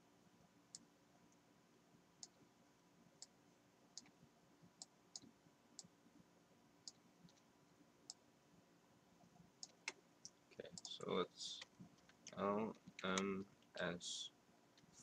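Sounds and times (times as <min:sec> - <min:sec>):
keyboard and mouse clicks: 0:09.6 - 0:13.8.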